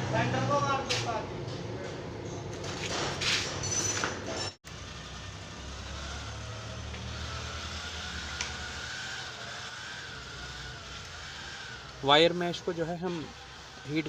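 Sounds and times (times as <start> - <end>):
heat gun running: 4.7 - 14.0.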